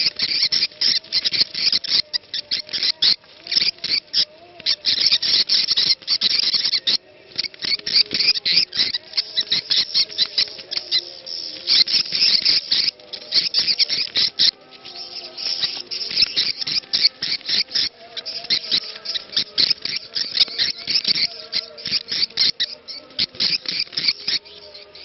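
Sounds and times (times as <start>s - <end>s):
faint call to prayer: 0.0s - 25.0s
swiftlets chattering chirps: 0.0s - 25.0s.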